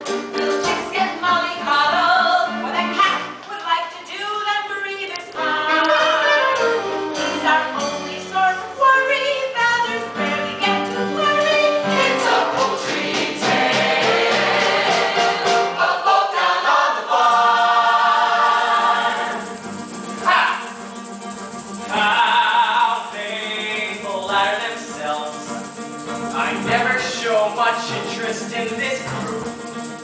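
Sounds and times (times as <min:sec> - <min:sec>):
cast singing in harmony: 0:10.2 - 0:19.6.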